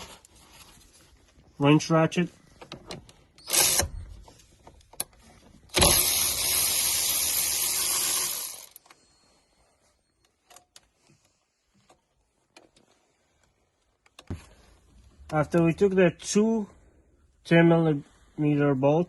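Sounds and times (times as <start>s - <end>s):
power ratchet running: 3.4s - 4.0s, 5.7s - 8.8s.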